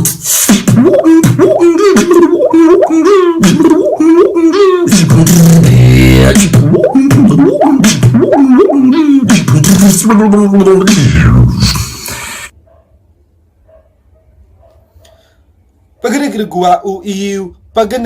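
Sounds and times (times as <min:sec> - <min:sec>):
beatboxing water-droplet bloops: 0:00.0 - 0:12.5.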